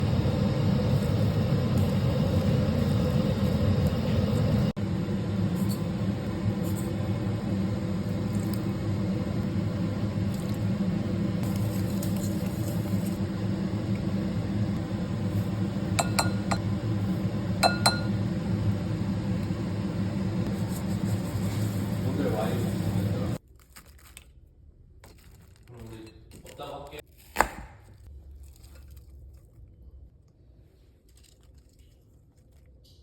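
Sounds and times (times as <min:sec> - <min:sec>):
low kitchen hum: 0:00.0 - 0:33.0
dishware clinking: 0:16.0 - 0:16.6.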